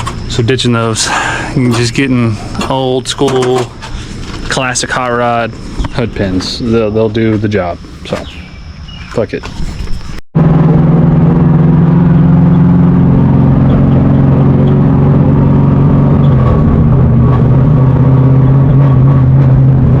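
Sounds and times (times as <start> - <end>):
car engine at high revs: 10.4 - 20.0.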